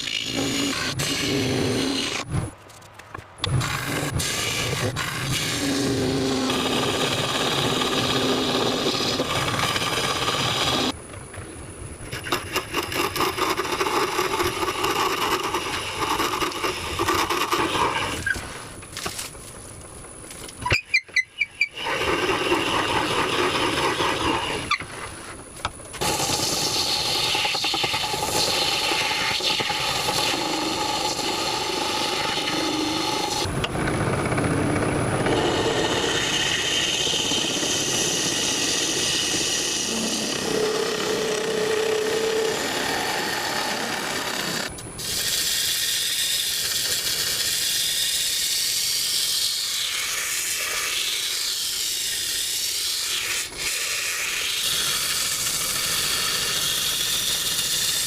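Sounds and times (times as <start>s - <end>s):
woodworking machine cutting wood: 0.0s - 2.3s, 3.4s - 11.0s, 26.0s - 58.0s
high squealing tones: 20.6s - 22.0s.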